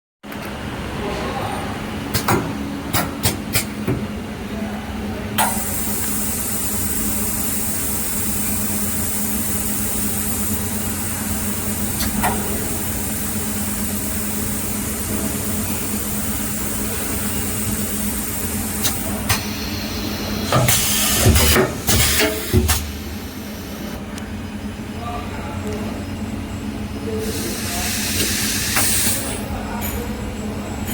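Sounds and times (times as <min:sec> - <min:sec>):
machine humming: 0:05.4 - 0:24.1.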